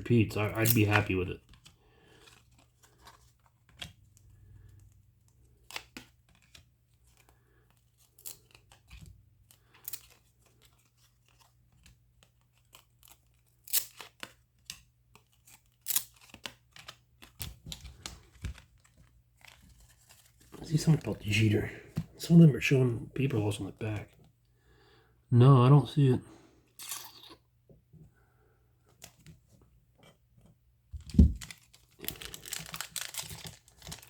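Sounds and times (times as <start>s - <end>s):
wrapper crinkling and tearing: 31.1s - 34.0s.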